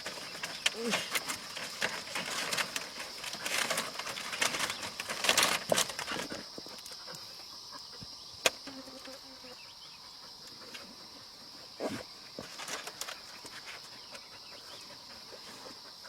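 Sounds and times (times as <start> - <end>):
rustling and crackling: 0.0 - 7.4, 11.8 - 15.9
insects droning: 0.0 - 16.0.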